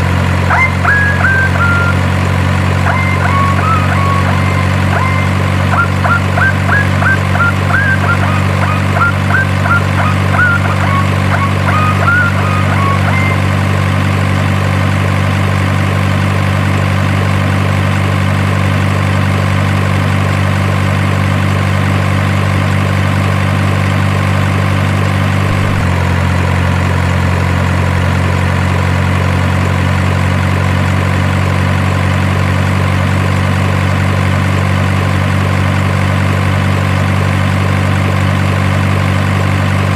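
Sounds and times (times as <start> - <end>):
truck engine idling: 0.0 - 39.9
short high chirps: 2.9 - 13.6.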